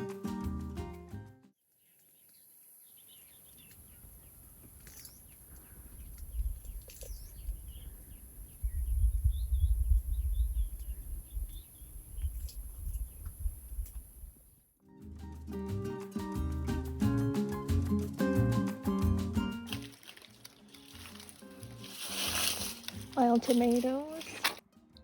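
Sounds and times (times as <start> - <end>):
small birds chirping: 1.7 - 13.8
wind rumble on microphone: 5.6 - 14.5.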